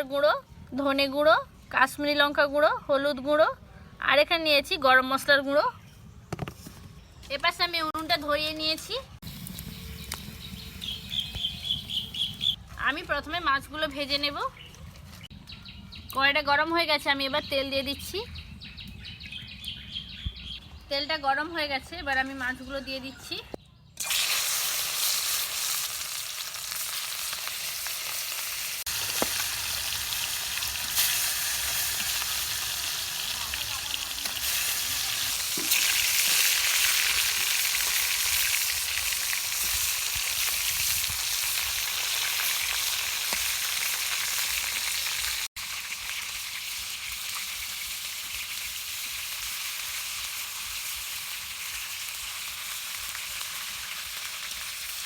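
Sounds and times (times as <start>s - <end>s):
fish sizzling in hot oil: 24.0s - 55.0s.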